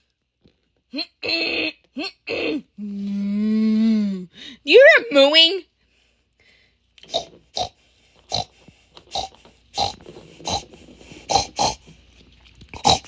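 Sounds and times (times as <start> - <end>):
pig grunting and snorting: 7.1 - 12.0, 12.7 - 13.0.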